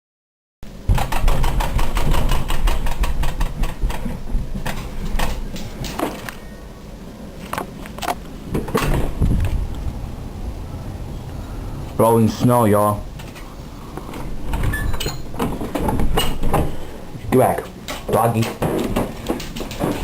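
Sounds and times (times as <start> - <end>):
wind buffeting microphone: 8.4 - 12.4, 13.0 - 17.3
clicks and knocks: 17.9 - 20.0.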